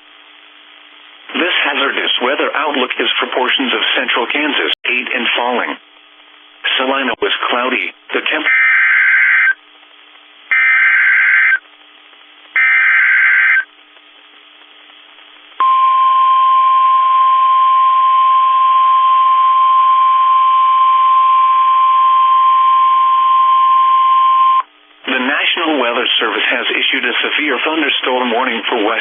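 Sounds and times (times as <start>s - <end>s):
screeching data bursts: 8.5s - 9.6s, 10.5s - 11.6s, 12.6s - 13.7s
steady warning alarm tone: 8.5s - 9.6s, 10.5s - 11.6s, 12.6s - 13.7s.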